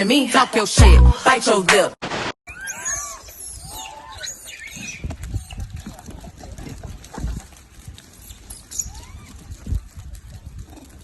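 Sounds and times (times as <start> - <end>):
small animal squeaks: 2.5 - 5.7, 8.5 - 9.4.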